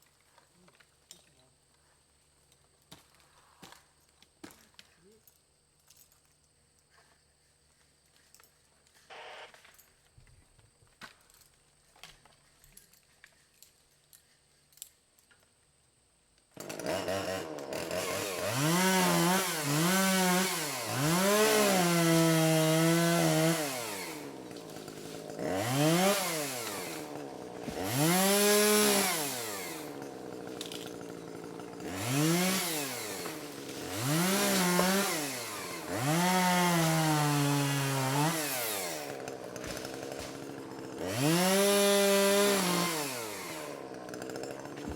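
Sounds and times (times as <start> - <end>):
chainsaw revving: 9.1 - 9.5, 16.5 - 44.9.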